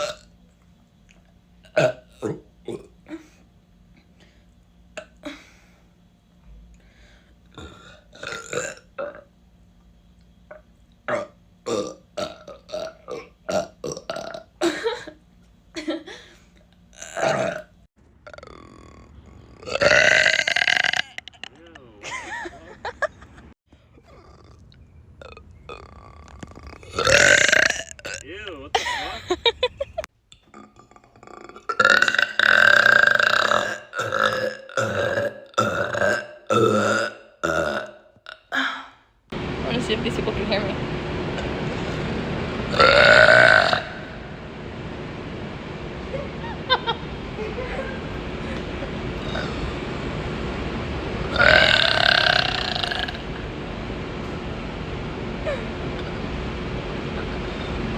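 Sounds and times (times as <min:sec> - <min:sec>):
loud belching: 0:00.0 - 0:00.3, 0:01.6 - 0:03.0, 0:07.5 - 0:09.3, 0:10.5 - 0:14.5, 0:17.0 - 0:21.8, 0:24.0 - 0:28.5, 0:30.5 - 0:38.4, 0:42.7 - 0:44.2, 0:49.2 - 0:49.8, 0:51.3 - 0:53.4
person burping: 0:01.7 - 0:03.3, 0:07.5 - 0:09.3, 0:10.5 - 0:15.0, 0:17.0 - 0:21.8, 0:24.0 - 0:28.4, 0:30.4 - 0:38.8, 0:42.7 - 0:44.1, 0:48.5 - 0:49.7, 0:51.3 - 0:53.2.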